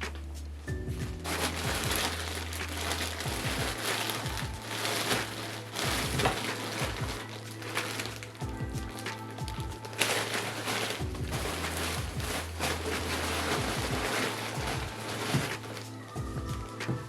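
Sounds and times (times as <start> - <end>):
music with deep bass: 0.0 - 17.0.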